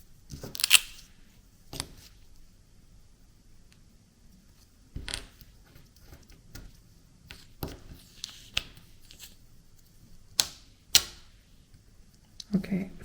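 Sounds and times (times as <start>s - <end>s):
tape tearing and peeling: 0.5s - 1.1s.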